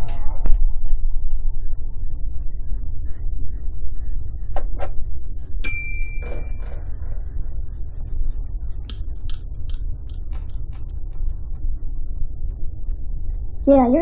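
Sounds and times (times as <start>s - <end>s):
steady low rumble: 0.0s - 14.0s
short ringing ping: 5.7s - 6.6s.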